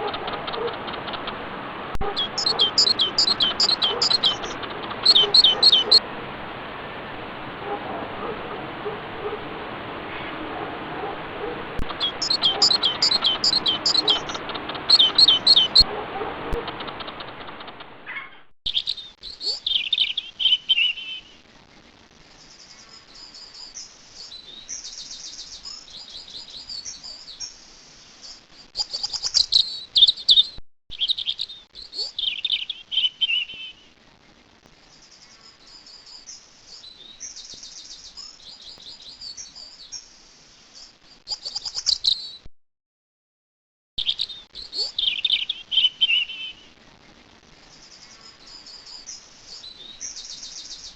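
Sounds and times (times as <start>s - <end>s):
songbird singing trills: 2.0s - 6.1s, 11.8s - 21.3s, 44.0s - 46.6s.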